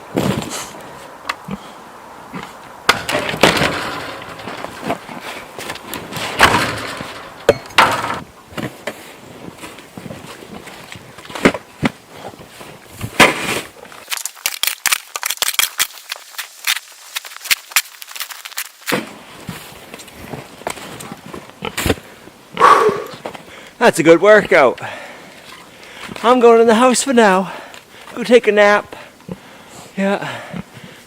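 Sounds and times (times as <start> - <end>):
ice cracking under a tool: 13.0 - 21.1
rapid crackling clicks: 14.0 - 18.9.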